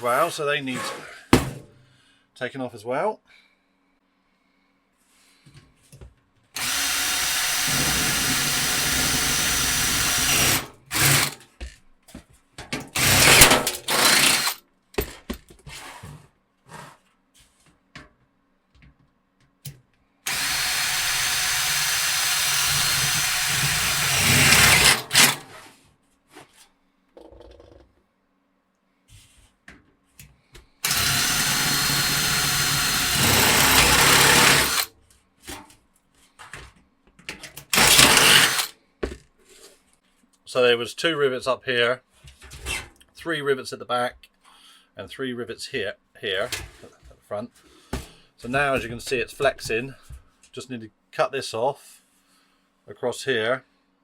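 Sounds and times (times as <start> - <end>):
drill clicks: 6.6 - 11.4, 12.9 - 14.6, 20.3 - 25.4, 30.8 - 34.9, 37.6 - 38.7
power drill drilling metal: 6.6 - 11.4, 12.9 - 14.6, 20.3 - 25.4, 30.8 - 34.9, 37.7 - 38.7.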